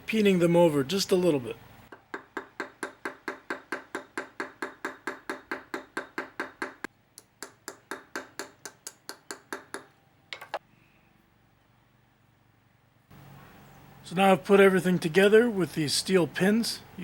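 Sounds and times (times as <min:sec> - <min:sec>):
small hammer tapping steel pins: 0:01.9 - 0:10.6.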